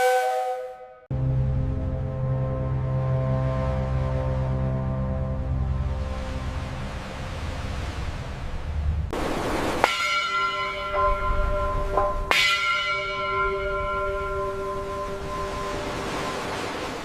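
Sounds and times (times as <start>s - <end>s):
low rumble: 1.1s - 9.8s
large bell ringing: 9.6s - 17.0s.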